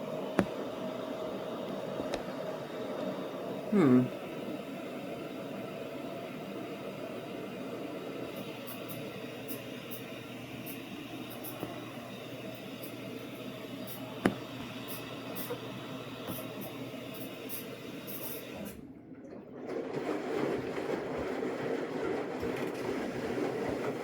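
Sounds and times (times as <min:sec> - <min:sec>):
water rushing in drum: 0:00.0 - 0:03.1
washing machine running: 0:00.0 - 0:24.0.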